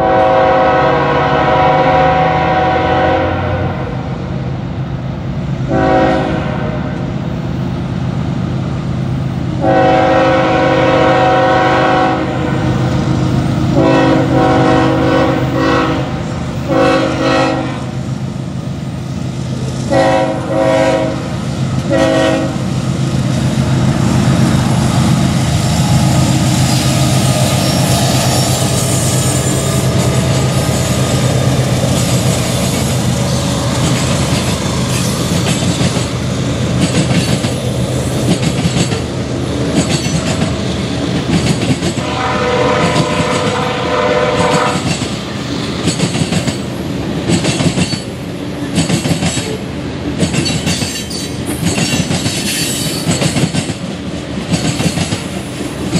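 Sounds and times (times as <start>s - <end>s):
locomotive horn chord: 0.0s - 4.1s, 5.7s - 7.1s, 9.6s - 12.8s, 13.7s - 18.0s, 19.9s - 22.7s, 42.0s - 45.0s
freight train rumbling past: 0.0s - 55.9s
wheels clacking over rail joints: 23.0s - 43.7s, 44.3s - 55.9s.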